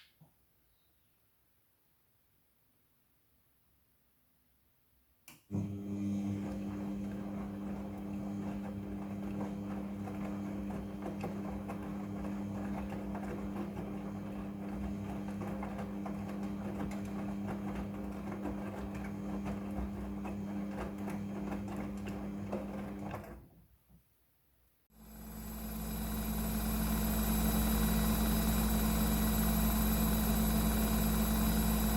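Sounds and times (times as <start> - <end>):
washing machine churning hum: 5.5 - 23.5, 24.9 - 31.9.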